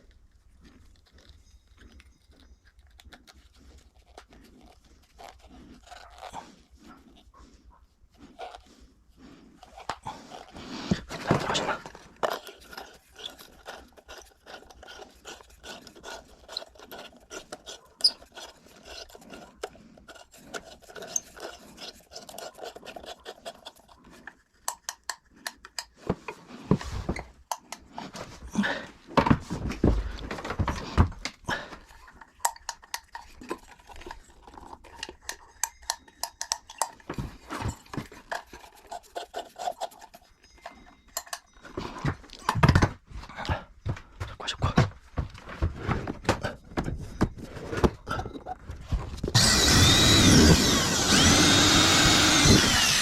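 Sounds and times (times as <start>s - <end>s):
rubbing and scraping: 0.0s - 41.0s.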